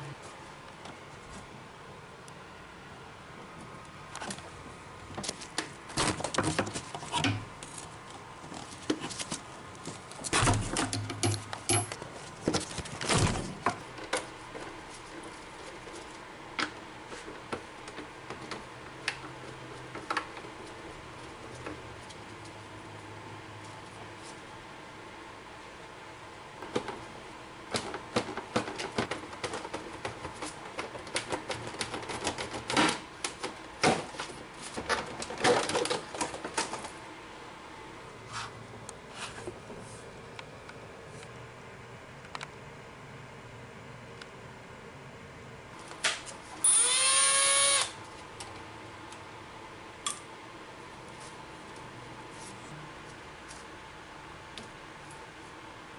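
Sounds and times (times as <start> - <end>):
steady background hiss: 0.0 - 27.8
hand tools clicking on metal: 10.9 - 12.0
small electric motor whining: 46.6 - 48.0.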